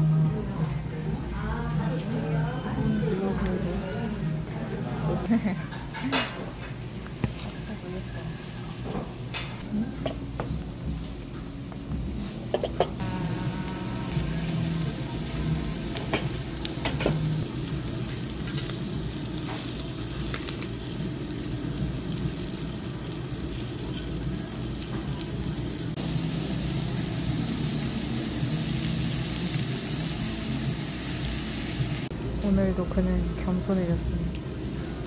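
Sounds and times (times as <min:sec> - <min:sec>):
meat sizzling on a grill: 0:12.1 - 0:32.2.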